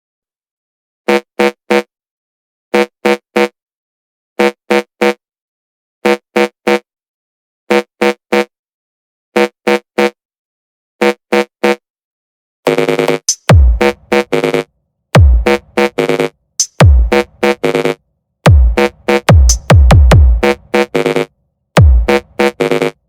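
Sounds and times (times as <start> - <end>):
synth stabs: 12.7 - 14.6, 15.2 - 23.0.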